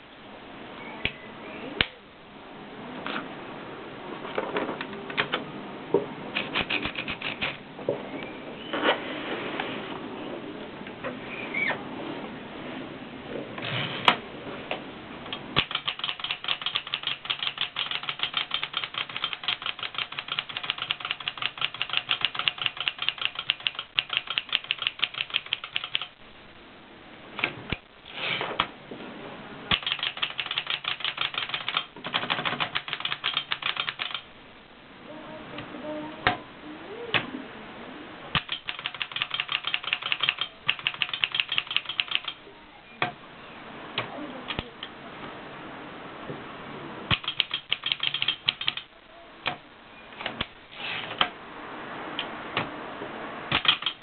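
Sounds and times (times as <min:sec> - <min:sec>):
typewriter keystrokes: 0:06.3 - 0:07.6, 0:15.3 - 0:26.2, 0:29.7 - 0:34.3, 0:38.3 - 0:42.4, 0:47.1 - 0:48.9, 0:53.5 - 0:54.0.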